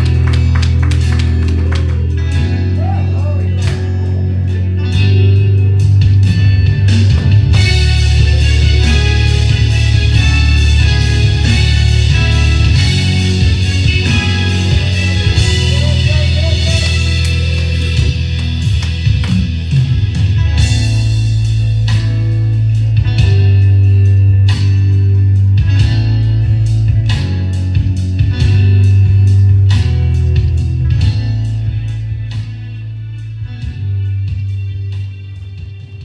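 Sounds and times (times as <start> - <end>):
guitar: 0.0 - 36.0
heavy held bass notes: 0.0 - 36.0
steady beat: 13.9 - 19.7.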